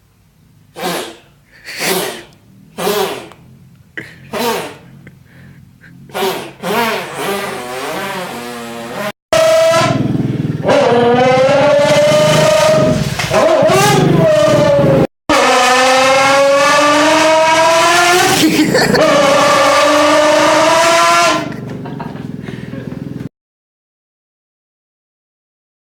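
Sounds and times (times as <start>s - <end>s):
person imitating car engine sounds: 0.4s - 23.3s.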